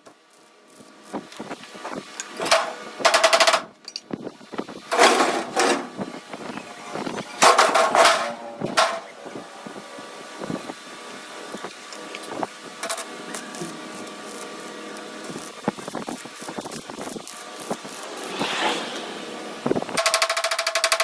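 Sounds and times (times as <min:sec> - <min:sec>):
arc welding crackle: 0:00.0 - 0:03.6, 0:10.4 - 0:21.0.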